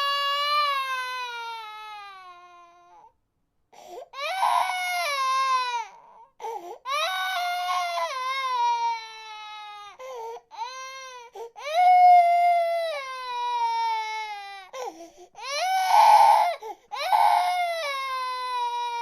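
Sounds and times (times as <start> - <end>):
infant crying: 0.0 - 3.1, 3.8 - 19.0
infant gasping breaths: 3.7 - 4.2, 6.4 - 6.9, 10.0 - 10.5, 14.7 - 15.4.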